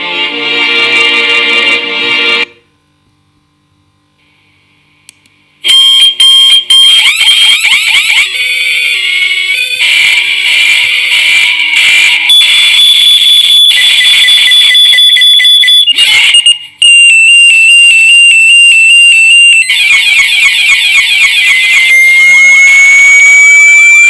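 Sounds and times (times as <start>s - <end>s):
electronic emergency alarm tones: 5.7s - 10.2s, 11.8s - 24.0s.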